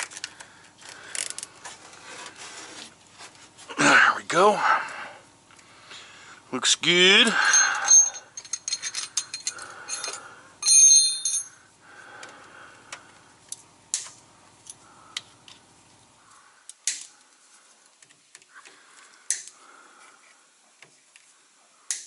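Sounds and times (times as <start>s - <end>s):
metal tools clinking: 7.3s - 11.6s
ringing metallic rattle: 7.3s - 11.6s.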